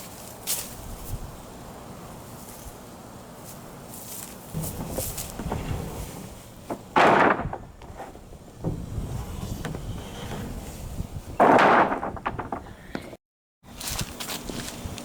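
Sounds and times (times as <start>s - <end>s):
loads crashing off a truck: 4.6s - 13.1s.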